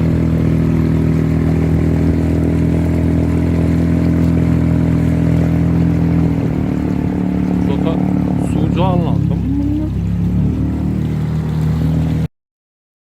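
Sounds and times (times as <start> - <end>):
engine humming steadily: 0.0 - 12.3.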